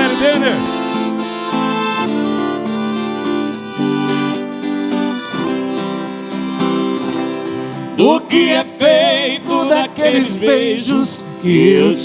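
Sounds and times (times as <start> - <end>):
live instrumental band music: 0.0 - 8.0.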